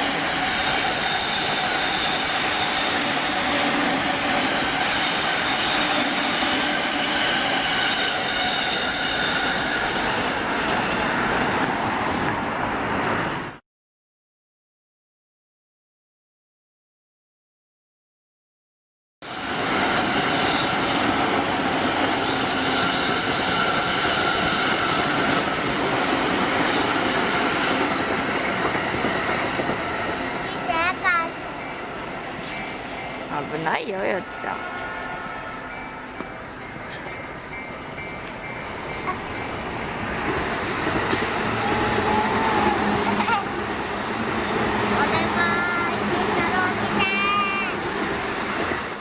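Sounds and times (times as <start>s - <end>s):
train wheels rumbling on rail: 0.0s - 13.6s, 19.2s - 49.0s.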